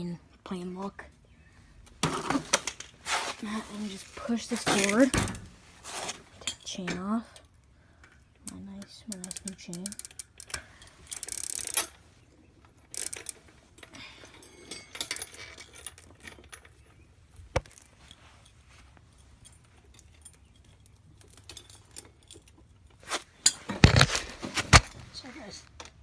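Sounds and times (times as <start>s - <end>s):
bicycle chain rattling: 8.5s - 12.0s, 12.8s - 16.8s.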